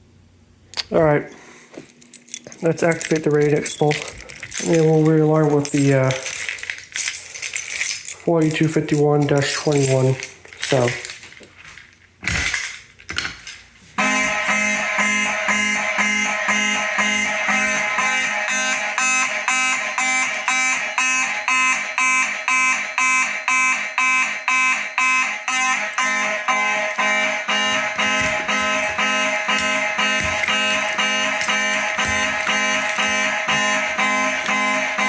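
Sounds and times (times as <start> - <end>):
pulsed fire alarm horns: 14.0 - 35.0.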